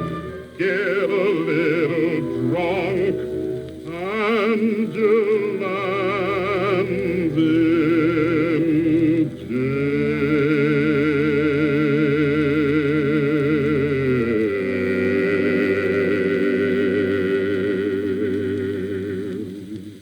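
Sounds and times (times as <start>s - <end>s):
operatic male voice singing: 0.0s - 20.0s
orchestra: 0.0s - 20.0s.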